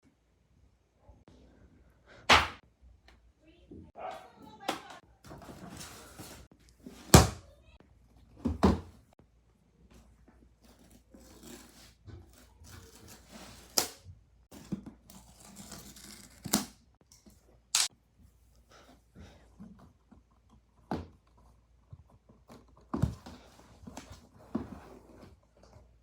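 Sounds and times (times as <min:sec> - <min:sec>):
wrapping tearing and rustling: 0:10.6 - 0:14.0, 0:14.6 - 0:16.8.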